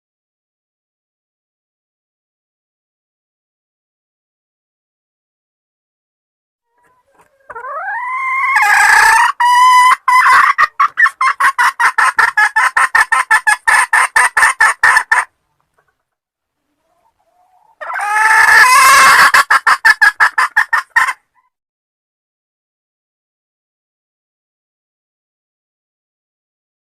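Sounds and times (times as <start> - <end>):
hen cackling: 6.7 - 15.3, 16.8 - 21.6.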